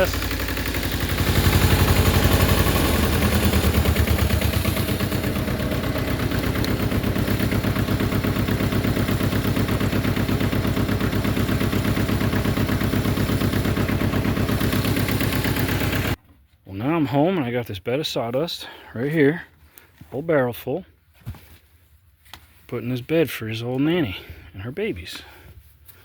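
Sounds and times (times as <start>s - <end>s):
engine chugging: 0.0s - 16.2s.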